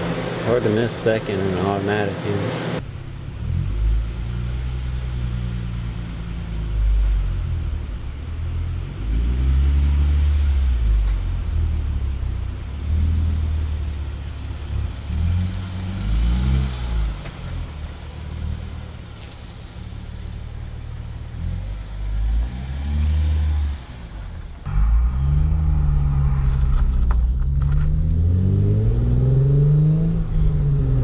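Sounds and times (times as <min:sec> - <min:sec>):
car exhaust rumble revving: 0:00.0 - 0:31.0.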